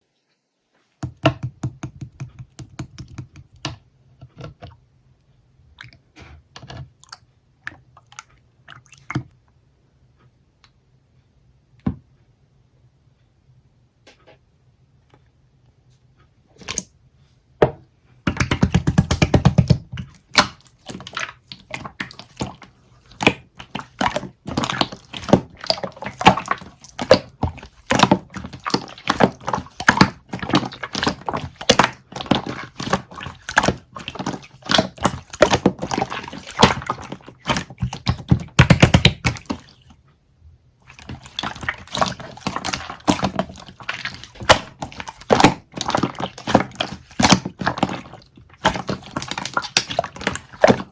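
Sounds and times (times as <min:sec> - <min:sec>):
jelly wet clicks and squishes: 0:01.0 - 0:04.9, 0:05.6 - 0:09.6, 0:16.5 - 0:17.0, 0:18.2 - 0:40.2, 0:40.8 - 0:50.9.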